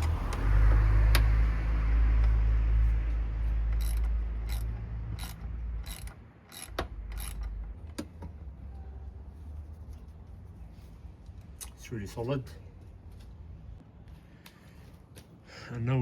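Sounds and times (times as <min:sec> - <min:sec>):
ratchet wrench clicking: 0:03.7 - 0:08.0.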